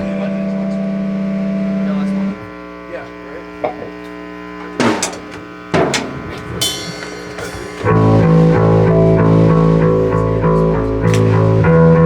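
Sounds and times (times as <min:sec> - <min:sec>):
amplifier hum: 0:00.0 - 0:12.0
loose drum hits: 0:04.8 - 0:09.1
rock band playing loudly: 0:05.8 - 0:10.0.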